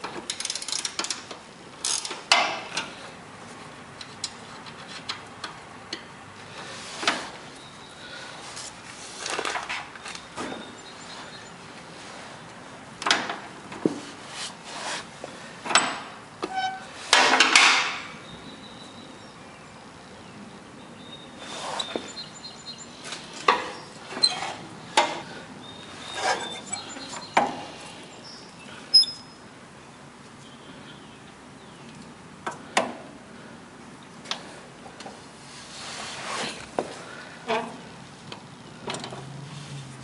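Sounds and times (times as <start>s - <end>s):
scraping rustle: 13.8s - 15.4s, 23.0s - 28.0s, 35.4s - 37.9s
faint bird chirps: 25.6s - 29.4s.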